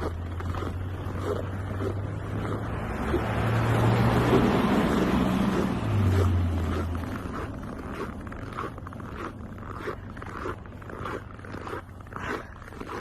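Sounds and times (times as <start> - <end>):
footsteps crunching on snow: 0.0 - 13.0
low engine hum: 0.0 - 13.0.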